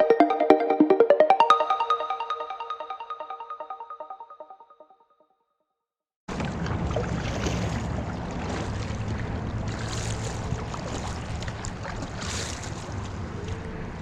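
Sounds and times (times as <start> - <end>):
marimba tune: 0.0 - 4.2
water lapping: 6.3 - 14.0.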